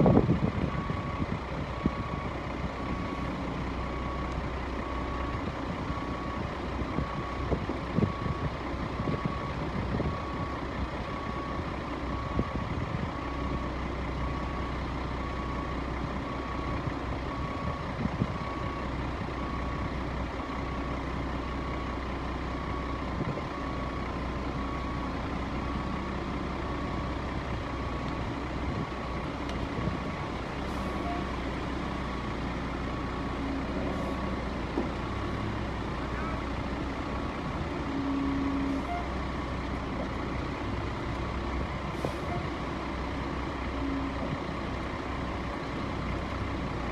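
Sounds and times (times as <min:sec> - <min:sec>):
truck diesel engine running: 0:00.0 - 0:46.9
reversing alarm beeping: 0:00.8 - 0:13.6, 0:30.6 - 0:32.2, 0:36.4 - 0:39.6, 0:42.0 - 0:43.0.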